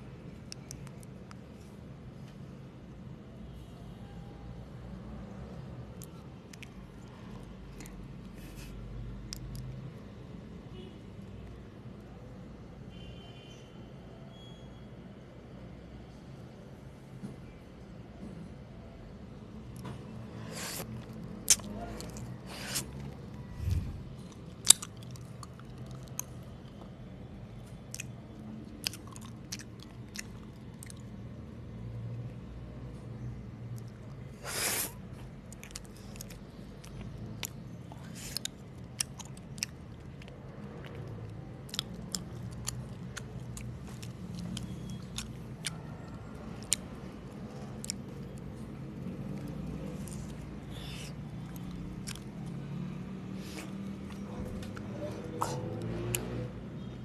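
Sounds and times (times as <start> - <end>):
mouth chewing and biting: 19.8 - 26.8, 27.6 - 31.2, 33.8 - 56.4
low hum: 23.3 - 24.5.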